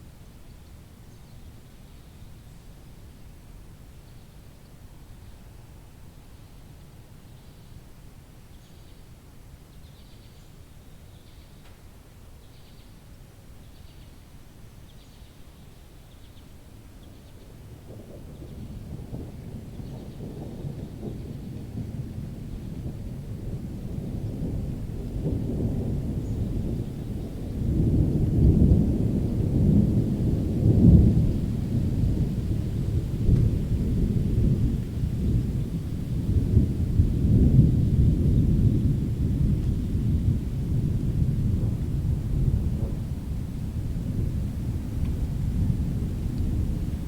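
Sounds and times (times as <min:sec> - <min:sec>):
thunder: 0:17.7 - 0:47.0.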